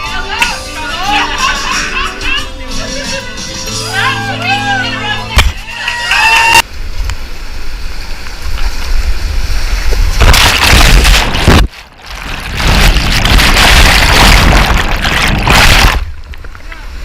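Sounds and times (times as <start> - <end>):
wind on microphone: 8.4 - 17.0.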